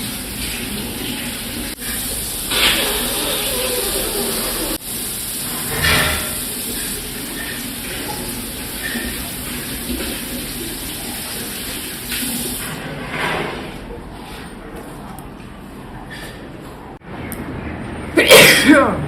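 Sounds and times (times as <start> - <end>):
person sneezing: 18.2 - 18.9.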